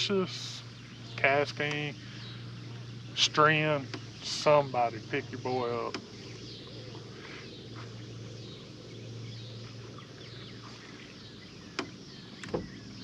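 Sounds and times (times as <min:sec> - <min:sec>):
birds chirping: 0:00.0 - 0:13.0
low steady hum: 0:00.0 - 0:13.0.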